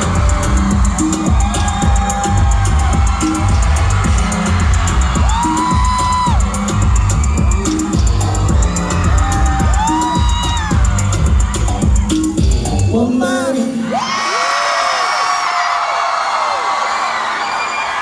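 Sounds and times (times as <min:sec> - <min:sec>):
kick drum and bass beat: 0:00.0 - 0:12.9
pop music over pa: 0:00.0 - 0:14.1.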